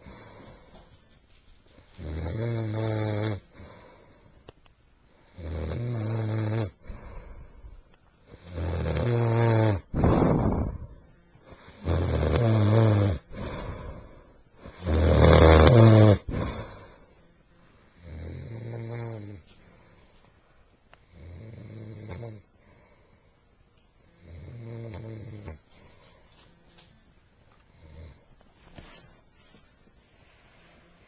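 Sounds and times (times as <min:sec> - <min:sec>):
man snoring: 0:02.0 - 0:03.8, 0:05.2 - 0:07.3, 0:08.3 - 0:17.0, 0:18.0 - 0:19.4, 0:21.1 - 0:22.4, 0:24.2 - 0:25.6, 0:27.7 - 0:28.2
noisy breath out: 0:03.5 - 0:04.4, 0:06.8 - 0:07.9.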